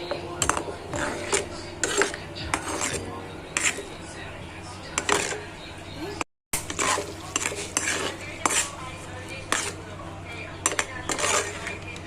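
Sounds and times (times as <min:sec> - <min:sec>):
utensil clinking against cookware: 0:00.0 - 0:04.0.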